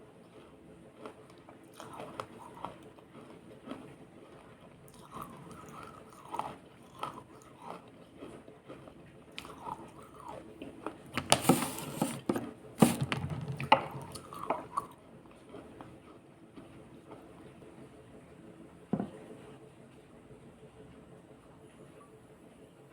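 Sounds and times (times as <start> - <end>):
wet crunching: 9.4 - 10.3.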